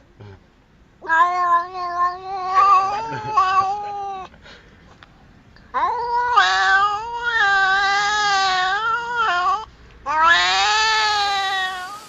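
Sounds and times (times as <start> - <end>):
cat yowling: 1.0 - 4.3, 5.7 - 12.0.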